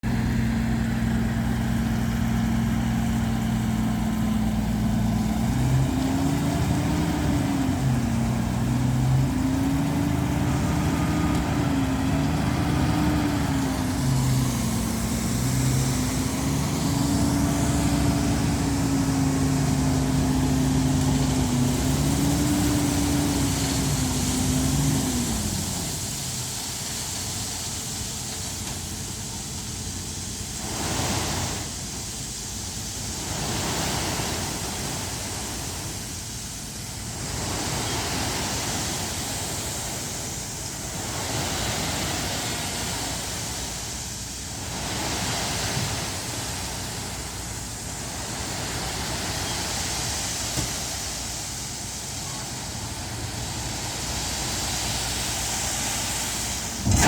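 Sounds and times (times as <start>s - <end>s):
steady hiss: 0.2s - 57.0s
engine revving: 3.2s - 26.1s, 56.3s - 57.0s.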